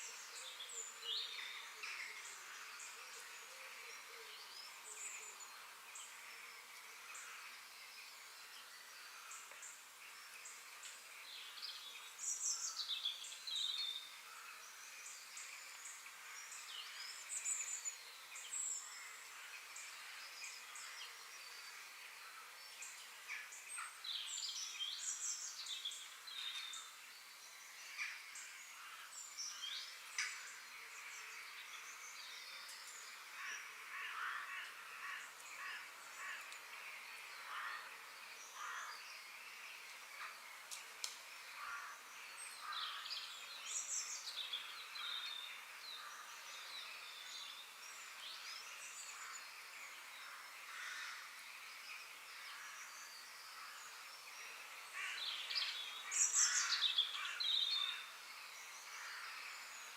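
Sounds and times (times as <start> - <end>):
birds calling and chirping: 0.0 - 59.9
steady background hiss: 0.0 - 59.9.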